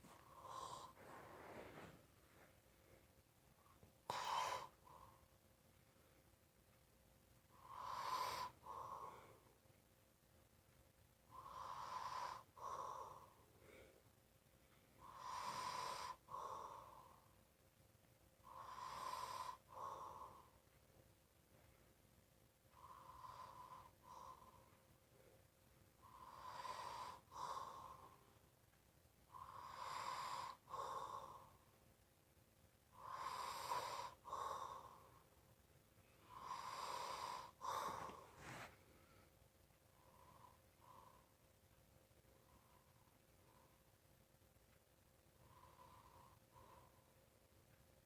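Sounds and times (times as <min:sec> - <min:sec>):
person snoring: 0:00.1 - 0:01.9, 0:04.1 - 0:04.8, 0:07.6 - 0:09.4, 0:11.4 - 0:13.4, 0:15.0 - 0:17.2, 0:18.4 - 0:20.5, 0:26.0 - 0:28.1, 0:29.4 - 0:31.5, 0:32.9 - 0:35.1, 0:36.3 - 0:38.7
person breathing loudly: 0:36.2 - 0:39.3.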